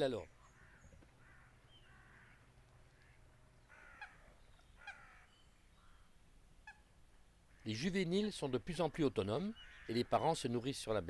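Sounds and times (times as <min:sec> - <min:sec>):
moorhen calling: 0:00.0 - 0:11.0.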